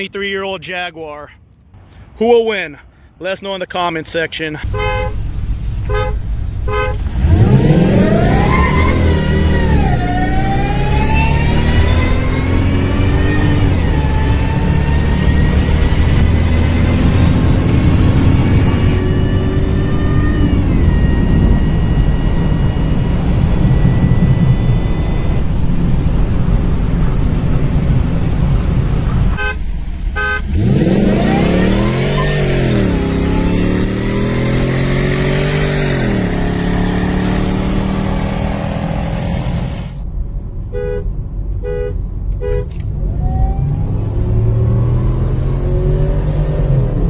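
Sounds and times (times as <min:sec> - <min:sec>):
car engine accelerating: 0:04.6 - 0:40.1, 0:42.8 - 0:47.0
wind noise: 0:04.6 - 0:40.6
short beeps: 0:20.2 - 0:25.8.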